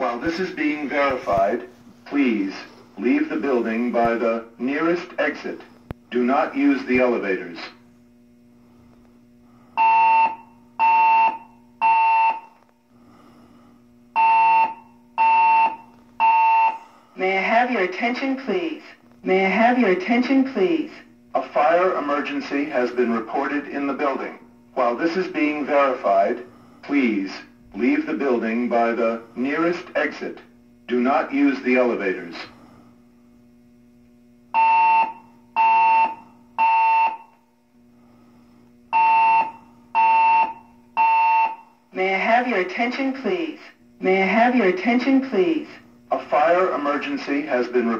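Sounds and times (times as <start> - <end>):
fire alarm horn blasts: 9.8 - 12.6, 14.1 - 18.8, 34.5 - 37.5, 38.9 - 43.6.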